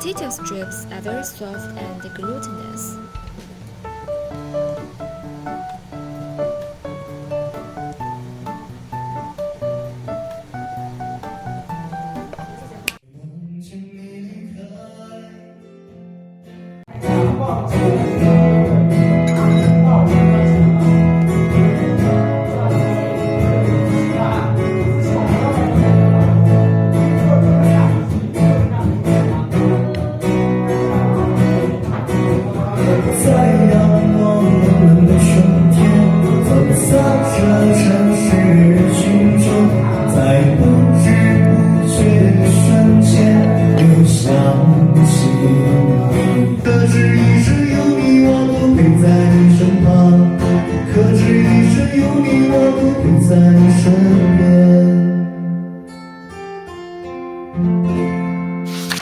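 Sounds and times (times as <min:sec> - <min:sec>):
song with guitar and singing: 0:11.8 - 0:56.9.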